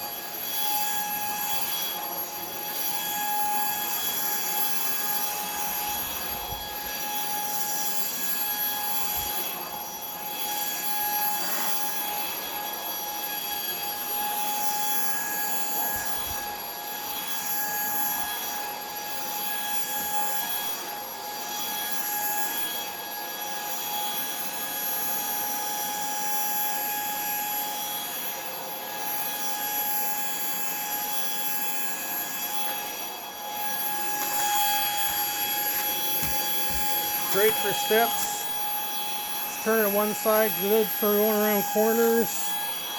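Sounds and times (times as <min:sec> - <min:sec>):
stick vacuum running: 0:32.3 - 0:42.9.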